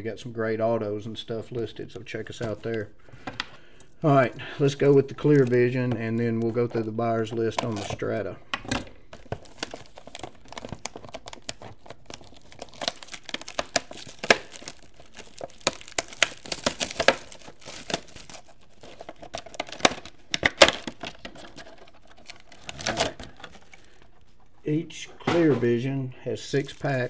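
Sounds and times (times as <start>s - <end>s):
plastic shrink wrap crinkling: 4.1s - 24.6s, 26.4s - 27.0s.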